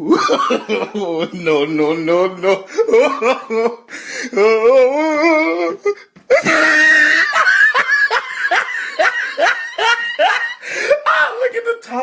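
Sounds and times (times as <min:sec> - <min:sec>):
person laughing hard: 0:00.0 - 0:01.7, 0:02.4 - 0:11.2
wavering vocal clip: 0:04.3 - 0:06.0.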